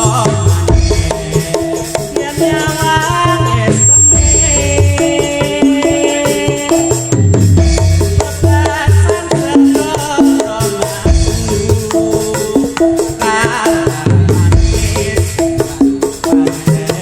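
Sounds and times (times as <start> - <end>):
deep drum beats: 0.0 - 17.0
rattling percussion: 0.0 - 17.0.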